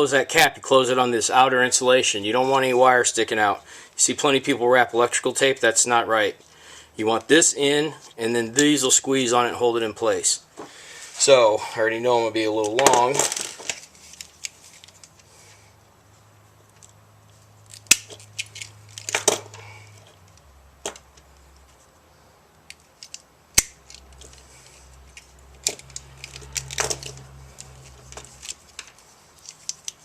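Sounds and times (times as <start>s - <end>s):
rustling of wire and cord: 12.4s - 30.0s.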